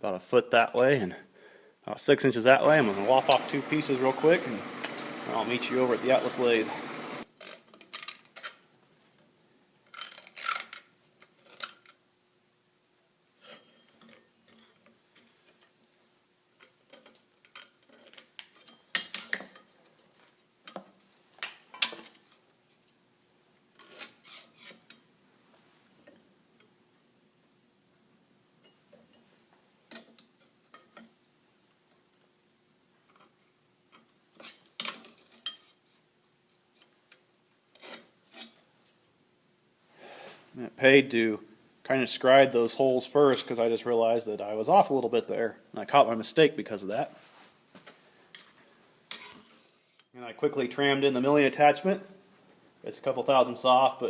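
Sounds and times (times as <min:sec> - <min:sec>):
steel parts and tools clinking: 0:13.4 - 0:15.8, 0:16.6 - 0:19.8, 0:28.6 - 0:31.1, 0:33.1 - 0:35.9.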